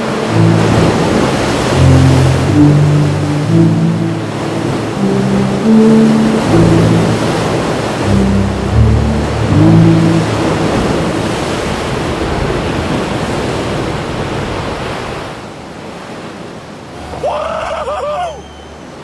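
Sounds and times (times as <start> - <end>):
low motor hum: 0.0 - 12.7
ocean surf breaking: 0.0 - 19.0.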